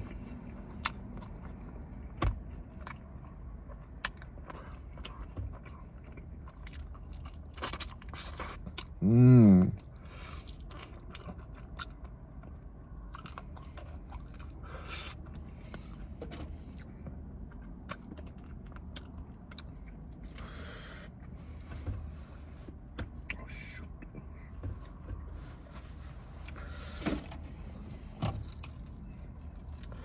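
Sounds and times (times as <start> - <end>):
person chewing chicken wings: 0.0 - 9.0, 9.6 - 21.3, 28.4 - 30.0.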